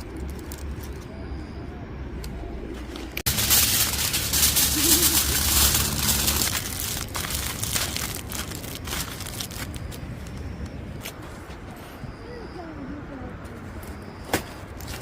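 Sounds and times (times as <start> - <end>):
material crinkling and rustling: 2.8 - 10.5.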